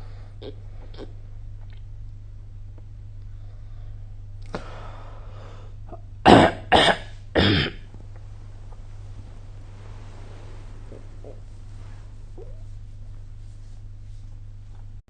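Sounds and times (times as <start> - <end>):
low hum: 0.0 - 15.0
person coughing: 5.9 - 7.9
soft breathy sound: 8.8 - 14.4.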